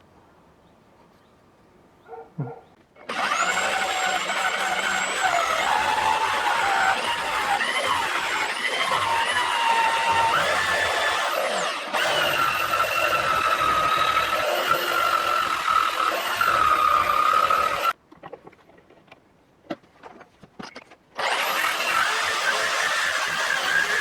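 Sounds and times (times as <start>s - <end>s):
rotary power tool whining: 3.0s - 18.0s, 21.2s - 24.0s.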